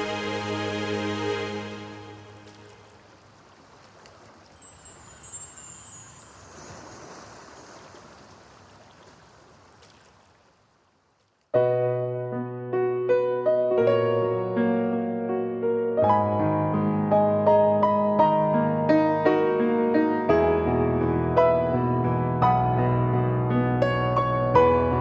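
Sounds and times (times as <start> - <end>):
synthesizer chord with airy wash: 0.0 - 2.5
electric piano chords: 11.6 - 25.0.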